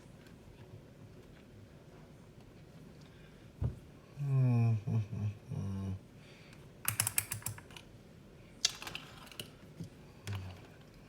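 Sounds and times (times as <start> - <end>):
low voiced hum: 3.6 - 6.3.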